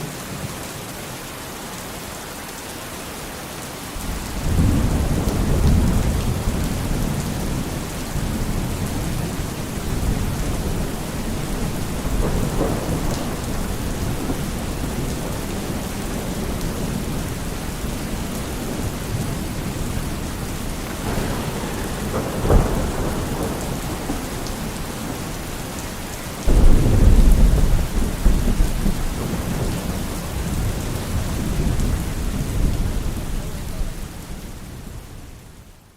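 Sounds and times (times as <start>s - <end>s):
heavy rain: 0.0s - 35.9s
thunder rumbling: 4.0s - 35.1s
sharp thunder crack: 4.1s - 17.3s, 18.8s - 25.7s, 26.4s - 32.8s.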